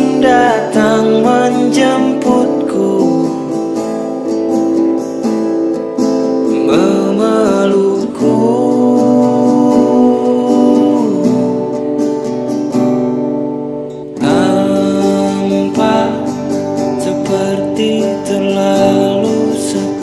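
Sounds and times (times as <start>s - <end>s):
person singing: 0.0s - 4.0s, 6.5s - 12.0s, 14.1s - 20.0s
acoustic guitar: 0.0s - 20.0s.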